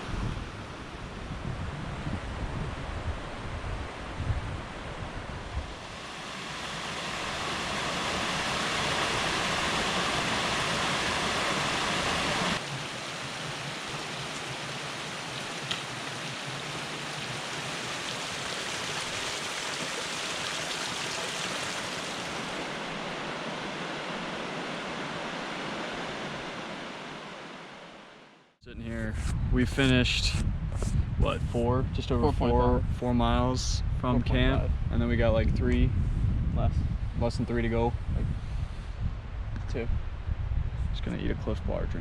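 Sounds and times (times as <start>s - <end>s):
stream water rushing: 5.7s - 28.4s.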